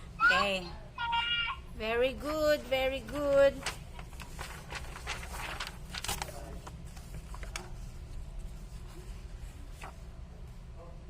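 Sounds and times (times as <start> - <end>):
steady low hum: 0.0 - 11.0
faint rustling handling noise: 2.2 - 10.9.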